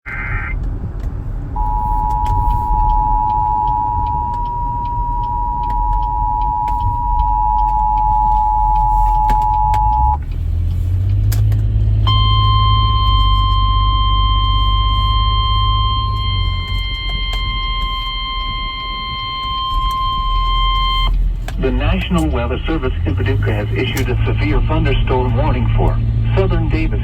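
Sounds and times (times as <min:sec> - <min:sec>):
car engine and road rumble: 0:00.0 - 0:27.0
steady warning tone: 0:01.6 - 0:10.2, 0:12.0 - 0:27.0
two-tone alert signal: 0:01.6 - 0:10.2, 0:12.1 - 0:21.1.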